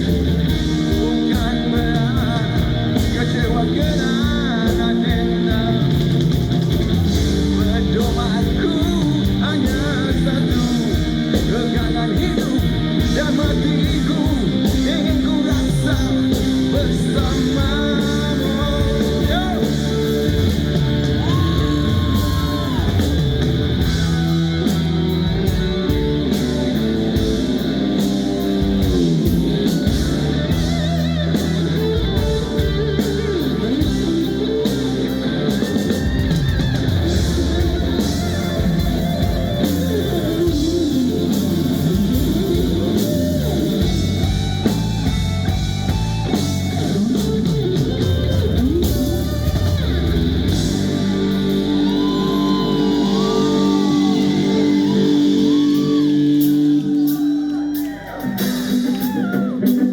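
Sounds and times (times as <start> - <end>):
live rock band playing: 0.0 - 59.9
person singing: 0.4 - 24.0, 50.8 - 59.9.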